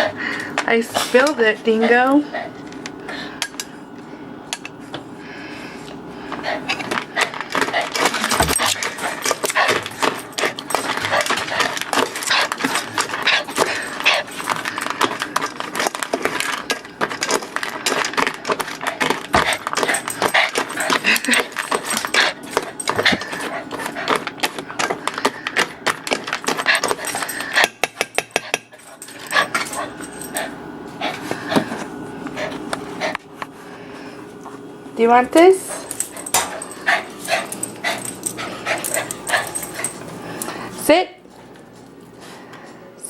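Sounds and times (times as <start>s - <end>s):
dog crunching dry food: 6.7s - 27.8s, 28.6s - 30.6s, 35.7s - 40.6s.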